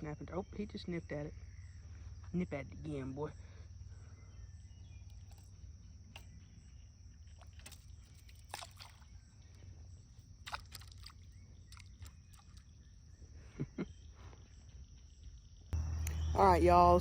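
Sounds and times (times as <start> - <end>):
small water splashes: 7.2 - 12.8
low steady rumble: 15.8 - 17.0.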